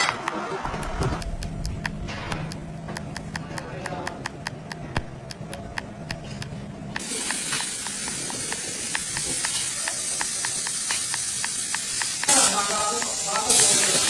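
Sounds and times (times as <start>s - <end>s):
regular mechanical clicking: 0.0s - 14.0s
loud steady hiss: 7.0s - 14.0s.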